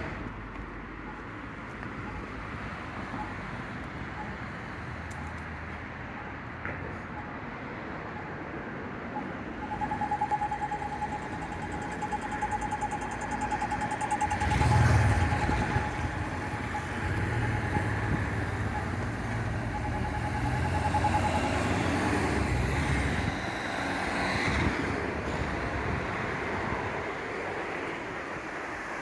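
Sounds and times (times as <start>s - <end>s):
steady high tone: 9.1s - 25.6s
vehicle engine rumbling past: 9.6s - 27.2s.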